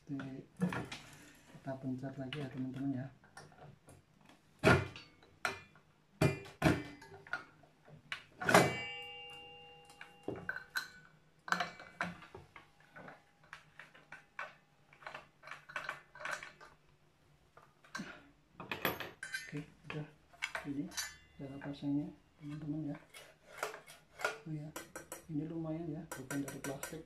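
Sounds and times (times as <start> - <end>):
metal parts knocking and clicking: 9.9 - 16.8, 23.1 - 25.3, 26.1 - 27.0.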